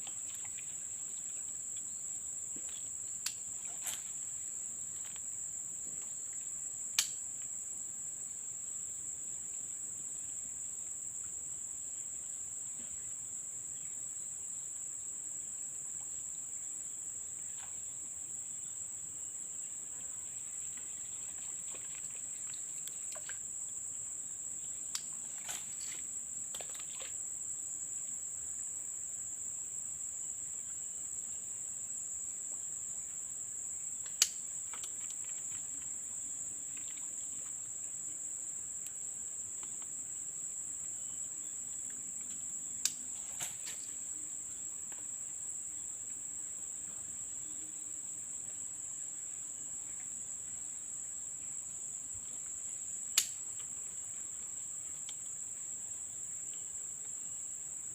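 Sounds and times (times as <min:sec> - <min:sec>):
insects chorus: 0:00.0 - 0:57.9.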